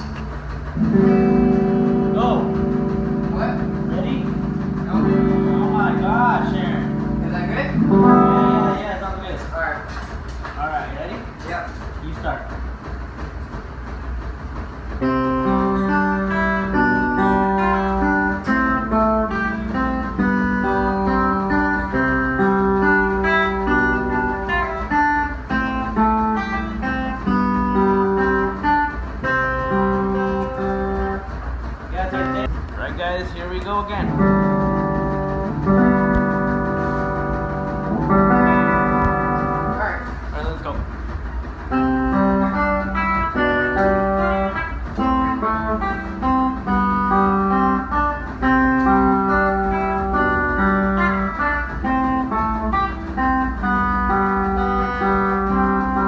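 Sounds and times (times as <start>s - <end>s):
low hum: 0.0s - 9.4s
guitar picked notes: 0.8s - 9.1s, 15.0s - 31.3s, 34.0s - 40.0s, 41.7s - 56.0s.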